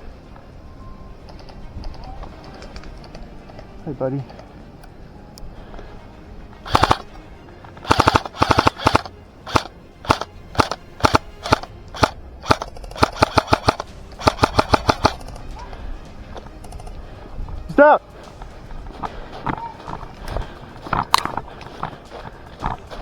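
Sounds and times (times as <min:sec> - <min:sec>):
airsoft gun firing: 0:06.7 - 0:07.2, 0:07.8 - 0:15.5.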